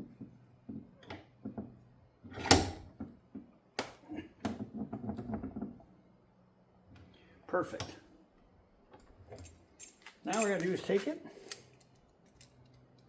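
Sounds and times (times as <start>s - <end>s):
metal tools clicking and rattling: 9.0s - 13.0s.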